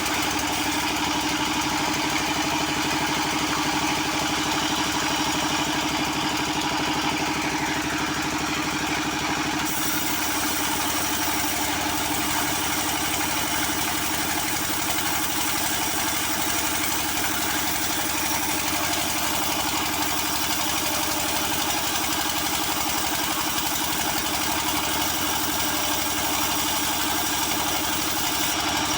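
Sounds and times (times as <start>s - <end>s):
wood saw engine running: 0.0s - 28.9s
high sawing hiss: 9.7s - 24.2s.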